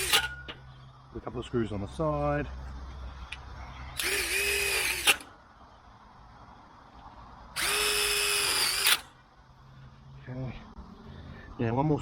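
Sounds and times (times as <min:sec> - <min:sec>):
cordless drill whining: 0:00.0 - 0:00.3, 0:04.0 - 0:05.3, 0:07.6 - 0:09.1.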